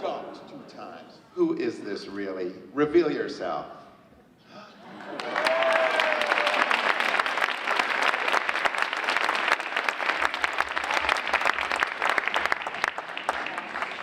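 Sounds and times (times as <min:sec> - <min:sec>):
children clapping: 0:05.1 - 0:14.0.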